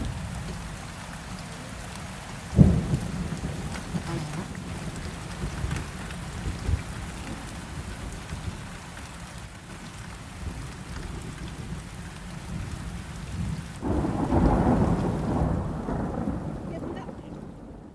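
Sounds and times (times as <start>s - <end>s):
steady rain: 0.0s - 17.9s
rumbling thunder: 2.5s - 8.6s, 10.4s - 17.9s.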